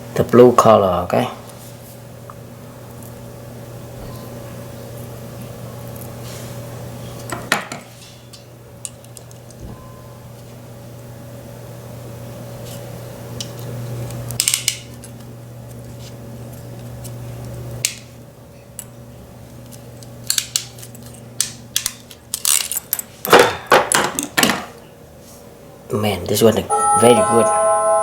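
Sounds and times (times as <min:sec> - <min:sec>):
steady low hum: 0:26.7 - 0:28.0.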